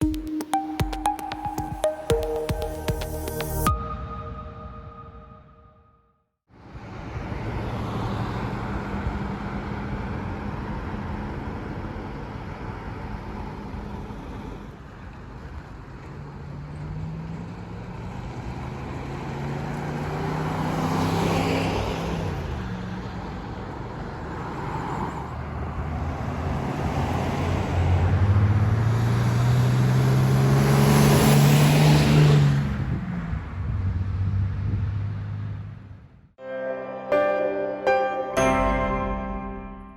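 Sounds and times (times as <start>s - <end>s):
vehicles driving past: 6.6s - 36.3s.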